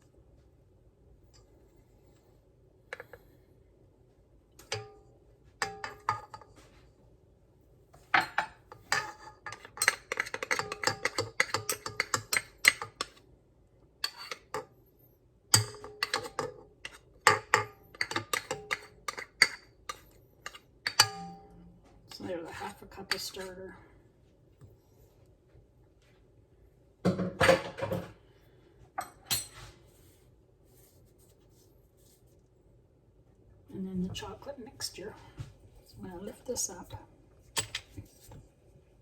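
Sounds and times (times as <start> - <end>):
utensil clinking against bowl: 5.6 - 6.5, 8.2 - 13.2, 15.6 - 22.3.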